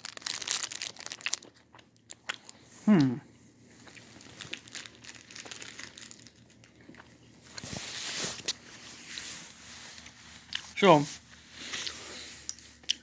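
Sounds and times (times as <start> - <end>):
plastic packaging crinkling: 0.0 - 2.6, 3.8 - 10.8.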